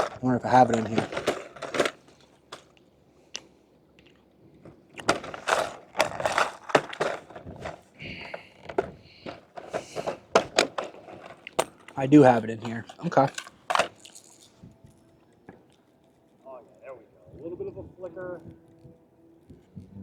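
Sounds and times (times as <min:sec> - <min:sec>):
bag rustling: 0:00.0 - 0:02.7, 0:04.7 - 0:16.6
small hard items clattering: 0:00.0 - 0:15.9.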